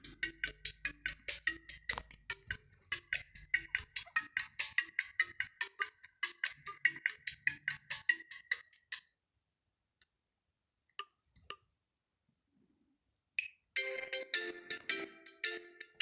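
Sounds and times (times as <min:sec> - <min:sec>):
fast ticking ringtone: 0:00.0 - 0:08.6.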